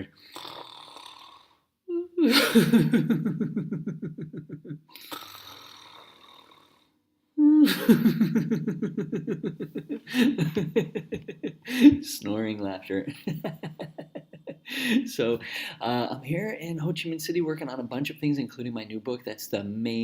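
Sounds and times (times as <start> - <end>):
fake snoring breath: 0.1 - 1.7, 4.9 - 7.0
man laughing: 1.9 - 5.0, 7.4 - 12.1, 13.1 - 15.6.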